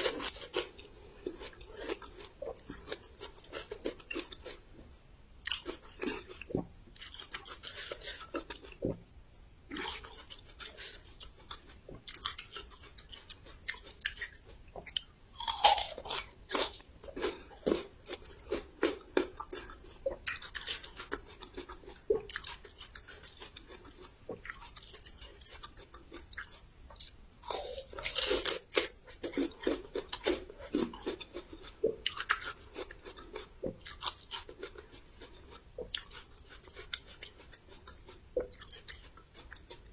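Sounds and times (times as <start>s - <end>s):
crunchy chewing: 0.0s - 4.6s, 5.4s - 9.0s, 9.7s - 39.9s.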